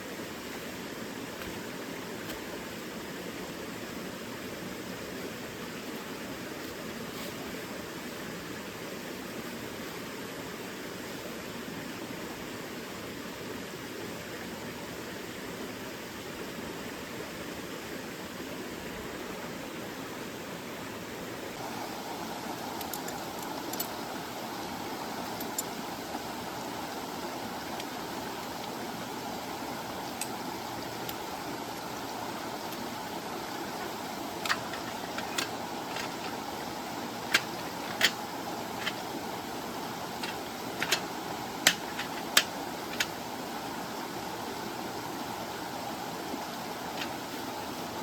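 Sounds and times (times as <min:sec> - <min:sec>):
stream water flowing: 0:00.0 - 0:48.0.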